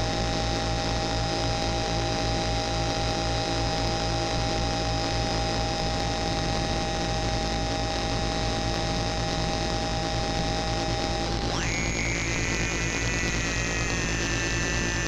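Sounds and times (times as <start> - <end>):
square-wave synth drone: 11.1 - 15.0.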